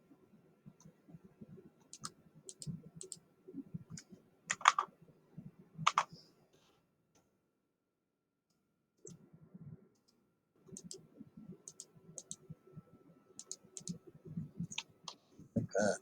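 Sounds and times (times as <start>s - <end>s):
mouse clicks: 1.8s - 3.2s, 5.9s - 6.2s, 10.8s - 11.0s, 11.7s - 12.4s, 13.4s - 14.0s
soft keyboard tapping: 3.9s - 4.9s, 5.9s - 6.7s, 10.0s - 11.1s, 13.4s - 16.0s.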